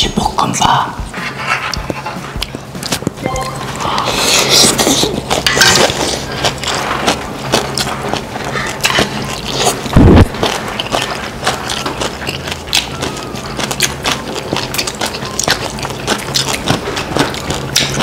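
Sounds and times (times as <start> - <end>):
person chewing: 1.1 - 18.0
utensils clicking on dishes: 5.0 - 18.0.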